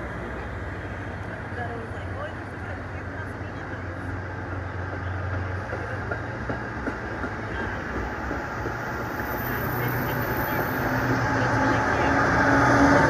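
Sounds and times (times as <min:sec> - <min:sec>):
train wheels clicking over rail joints: 0:04.8 - 0:10.2.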